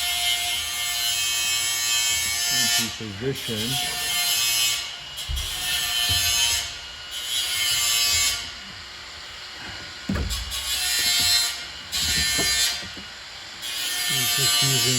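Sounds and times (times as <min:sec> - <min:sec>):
dull knocks: 0:05.2 - 0:06.7, 0:10.0 - 0:13.1
panel scraping rubber gasket: 0:09.6 - 0:13.2.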